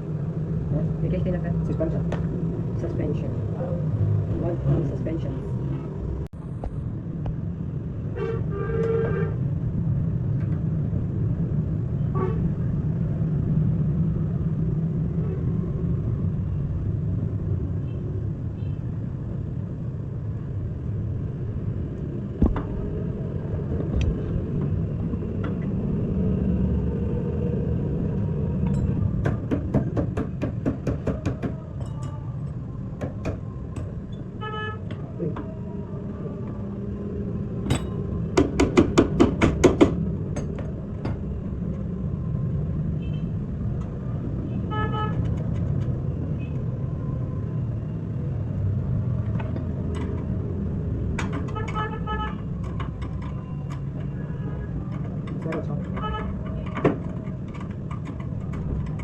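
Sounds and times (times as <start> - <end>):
motor vehicle rumble: 0.0 - 59.0
car horn toots: 56.0 - 56.4.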